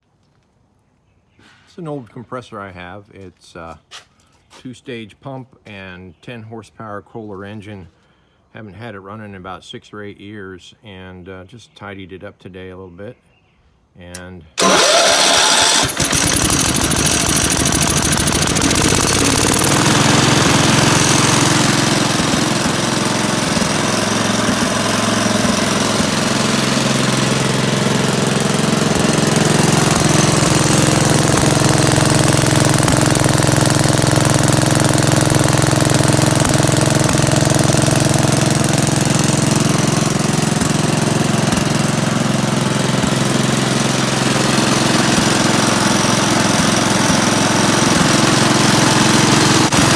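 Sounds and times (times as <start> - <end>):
air compressor running: 14.6 - 49.9.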